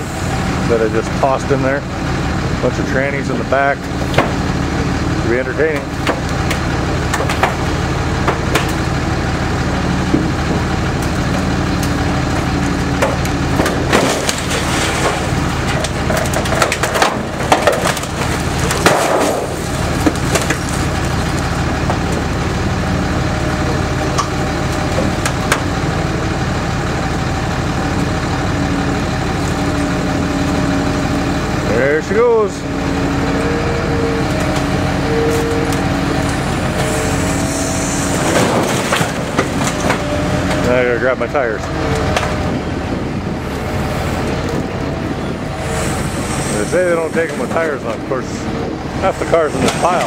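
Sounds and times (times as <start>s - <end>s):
diesel car crusher running: 0.0s - 50.0s
sheet metal creaking and cracking: 10.3s - 22.4s.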